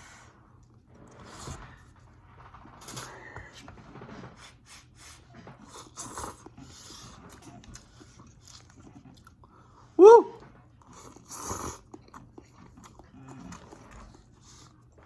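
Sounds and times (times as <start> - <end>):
chewing noises: 5.6 - 15.0.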